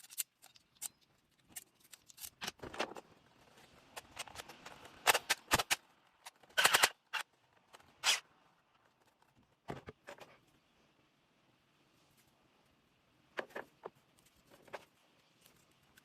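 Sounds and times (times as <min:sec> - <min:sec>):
plastic parts clicking and snapping: 0:00.0 - 0:03.1, 0:03.7 - 0:08.2.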